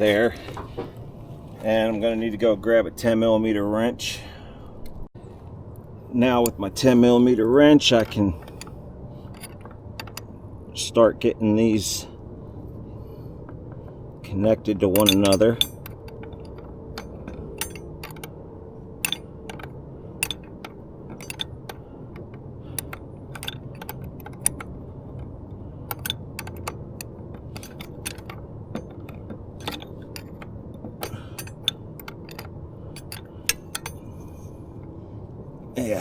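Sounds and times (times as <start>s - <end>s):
steady low hum: 0.0s - 36.0s
wrench clicking on metal nut: 14.8s - 18.3s, 19.0s - 24.7s, 25.9s - 34.5s.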